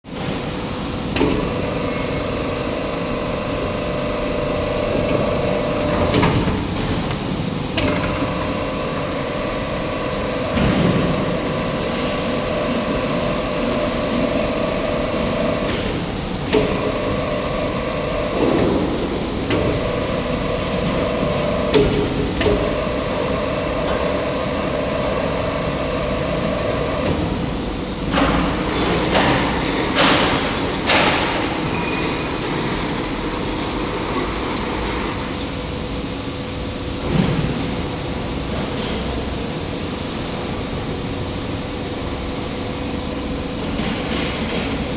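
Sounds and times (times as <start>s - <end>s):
machine motor humming: 0.2s - 36.8s
machine knock: 28.1s - 32.0s.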